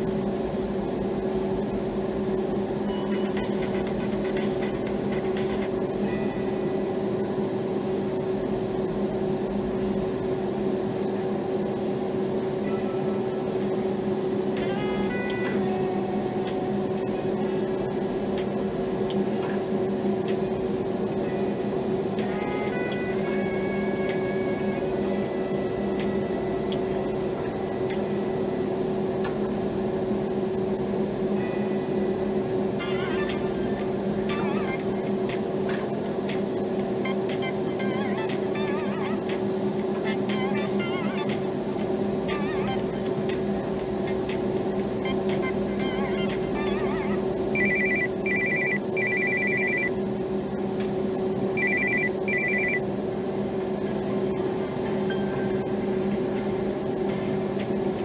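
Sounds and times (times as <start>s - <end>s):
steady low hum: 0.0s - 58.0s
electronic phone ringtone trill: 32.8s - 35.0s, 45.0s - 50.0s, 51.6s - 52.8s.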